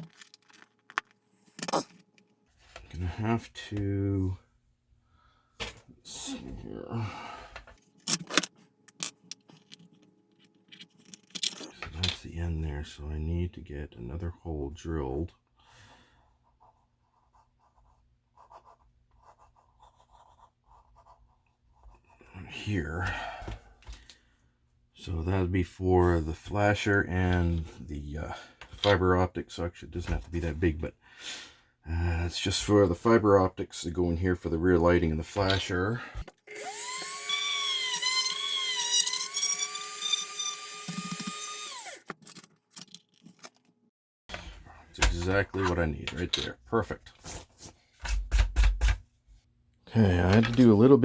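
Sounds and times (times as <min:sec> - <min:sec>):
hand drill scratching plastic: 0:36.4 - 0:42.5.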